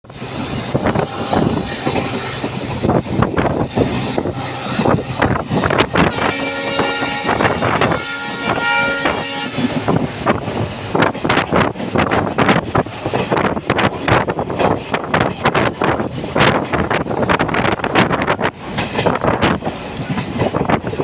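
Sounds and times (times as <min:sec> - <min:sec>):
rumble of passing train: 0:00.0 - 0:21.0
wind buffeting microphone: 0:00.1 - 0:21.0
locomotive air horn blasts: 0:05.6 - 0:09.8.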